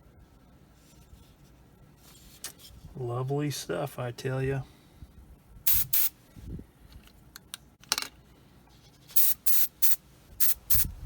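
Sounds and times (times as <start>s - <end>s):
airbrush spraying bursts: 5.7s - 6.1s, 9.1s - 11.0s.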